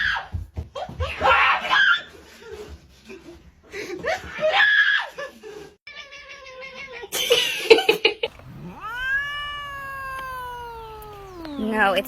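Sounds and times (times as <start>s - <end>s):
cat meowing and yowling: 8.3s - 12.0s.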